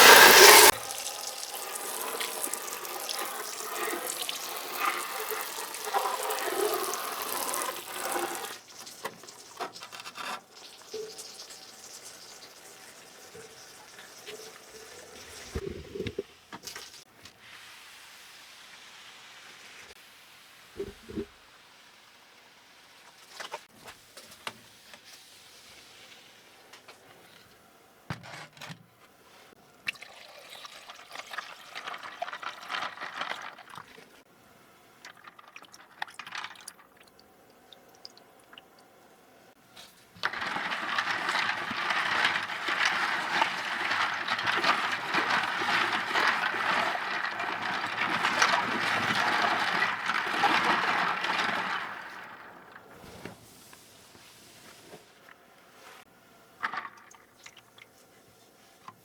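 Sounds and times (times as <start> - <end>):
tap water running: 0.0 - 17.4, 29.8 - 34.3, 39.9 - 53.3.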